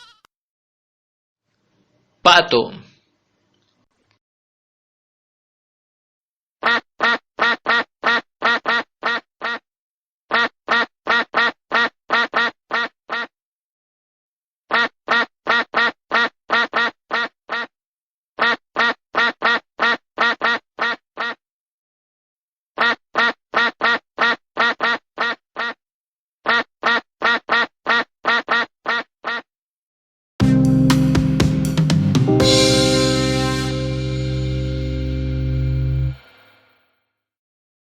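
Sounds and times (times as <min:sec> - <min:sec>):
duck quacking: 0:06.6 - 0:09.6, 0:10.3 - 0:13.3, 0:14.7 - 0:17.7, 0:18.4 - 0:21.4, 0:22.8 - 0:25.8, 0:26.4 - 0:29.5.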